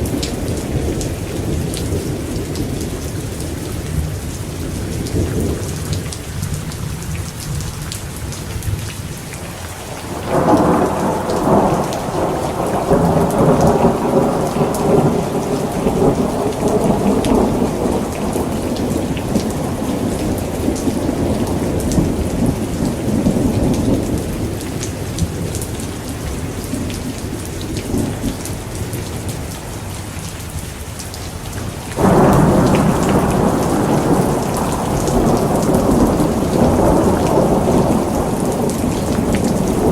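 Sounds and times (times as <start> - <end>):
steady rain: 0.0 - 39.9
rolling thunder: 10.0 - 28.9, 32.0 - 39.9.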